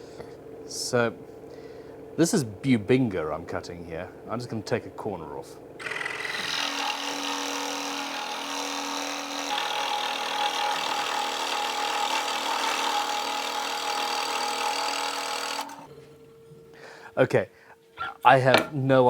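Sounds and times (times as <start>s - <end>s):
scroll saw cutting wood: 5.8s - 15.9s.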